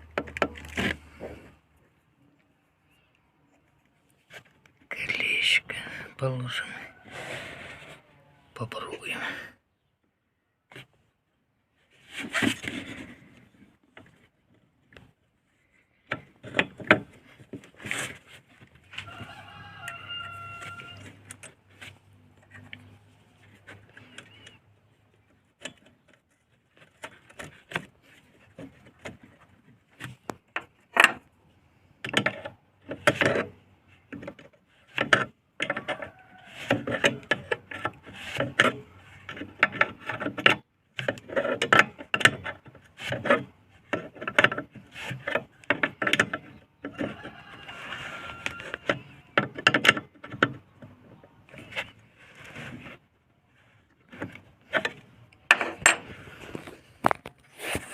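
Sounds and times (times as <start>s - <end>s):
rooster crowing: 19.0s - 21.2s, 35.6s - 36.8s, 46.9s - 49.4s.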